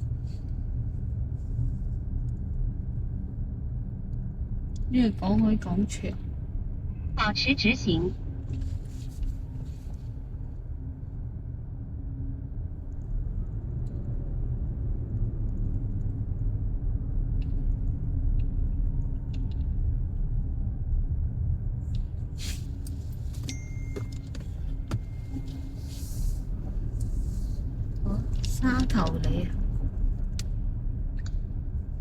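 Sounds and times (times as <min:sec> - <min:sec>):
car road noise rumble: 0:12.1 - 0:32.0.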